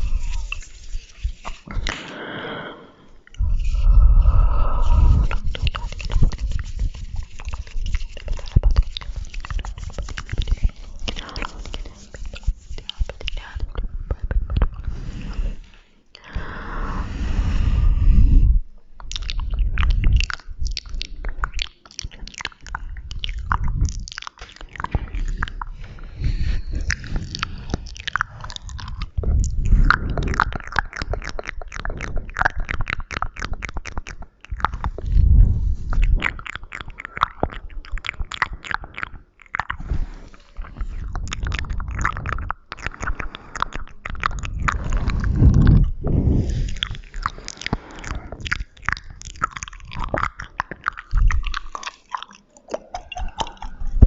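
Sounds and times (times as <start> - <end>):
wet mouth clicks and smacks: 0.0 - 2.2, 3.2 - 16.5, 17.6 - 54.0
low rumbling: 24.8 - 31.3, 34.8 - 36.4, 44.3 - 47.3.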